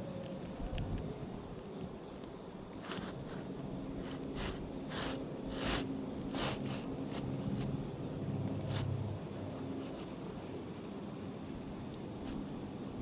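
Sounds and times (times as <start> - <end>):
low steady hum: 0.0 - 13.0
roofing shingle scraping: 2.6 - 8.0.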